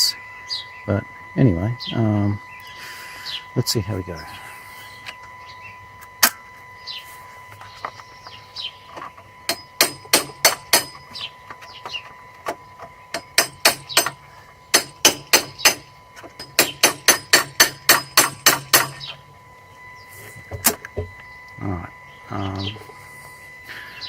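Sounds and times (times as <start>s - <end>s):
hammer tapping on metal: 9.5s - 11.1s, 13.1s - 15.8s, 16.4s - 19.1s.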